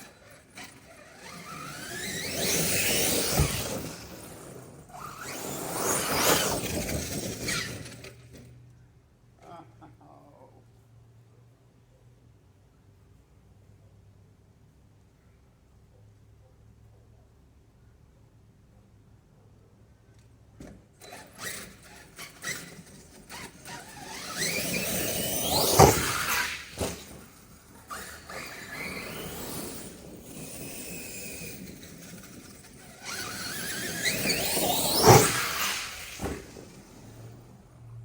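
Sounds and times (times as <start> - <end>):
electric motor whine rising: 0.0 - 8.0, 21.1 - 37.6.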